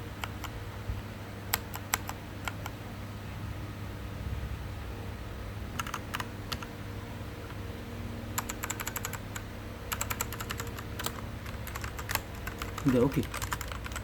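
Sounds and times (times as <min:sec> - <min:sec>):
mechanical keyboard typing: 0:00.2 - 0:00.6, 0:01.5 - 0:02.8, 0:05.8 - 0:06.7, 0:08.4 - 0:14.0.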